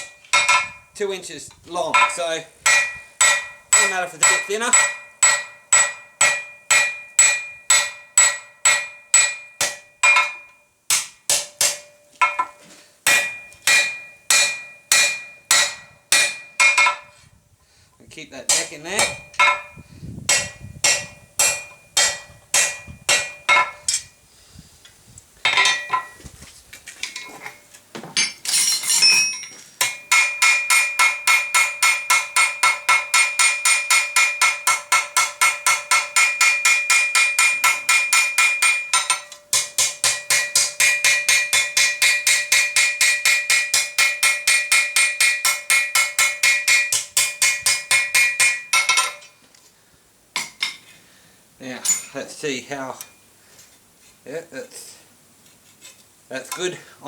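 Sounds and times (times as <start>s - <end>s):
hammer striking steel on anvil: 0.0s - 0.9s, 1.9s - 17.2s, 18.5s - 24.1s, 25.5s - 26.2s, 28.2s - 49.4s, 50.4s - 50.8s, 51.8s - 52.2s.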